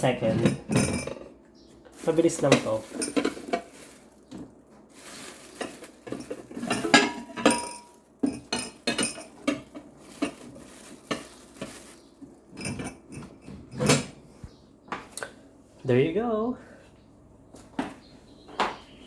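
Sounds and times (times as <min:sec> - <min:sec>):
dishes and cutlery clinking: 0:00.2 - 0:01.4, 0:02.0 - 0:04.1, 0:05.1 - 0:14.2.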